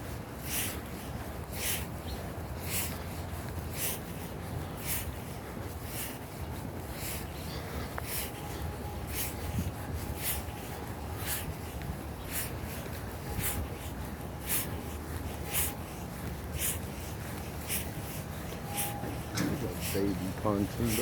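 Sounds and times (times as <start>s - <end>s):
footsteps crunching on path: 0.0s - 21.0s.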